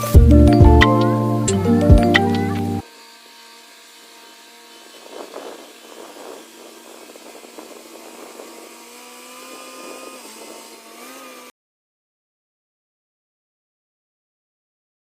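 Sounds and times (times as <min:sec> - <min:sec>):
small motor running: 0:00.0 - 0:11.5
rough scraping: 0:02.2 - 0:11.5.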